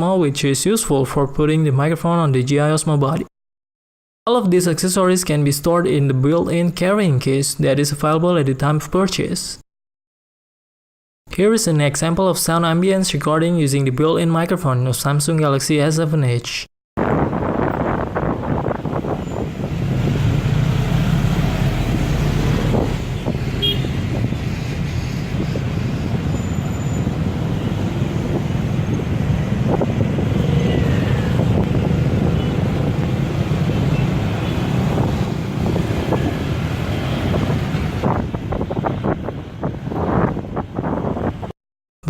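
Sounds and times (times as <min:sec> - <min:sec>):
road traffic rumble: 0:17.0 - 0:41.5.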